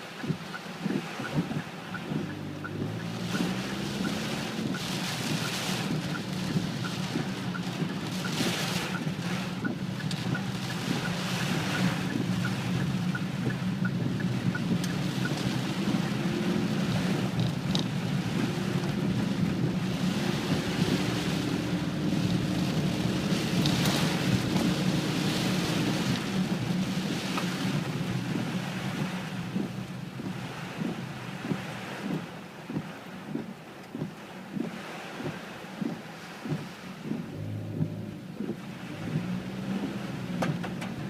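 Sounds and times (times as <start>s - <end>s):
wind-driven rain rushing: 0.0s - 41.0s
strong wind buffeting microphone: 0.1s - 41.0s.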